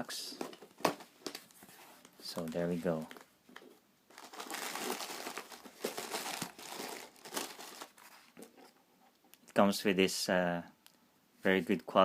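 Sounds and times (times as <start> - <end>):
packing material crinkling: 4.1 - 8.4.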